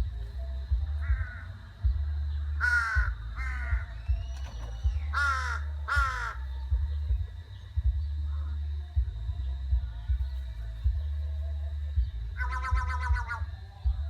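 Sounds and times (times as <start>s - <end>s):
steady low rumble: 0.0s - 14.0s
crow cawing: 1.0s - 1.5s, 2.6s - 4.0s, 5.0s - 6.4s, 12.4s - 13.5s.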